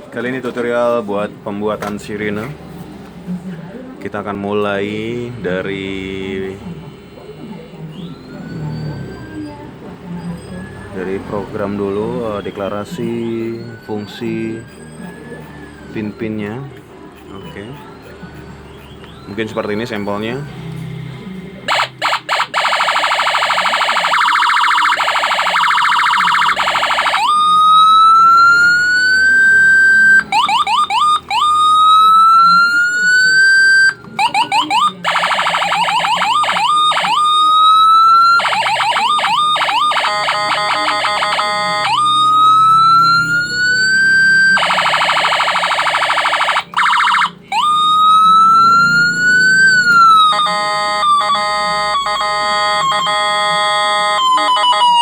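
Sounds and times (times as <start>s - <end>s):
electronic siren tones: 5.0s - 55.0s.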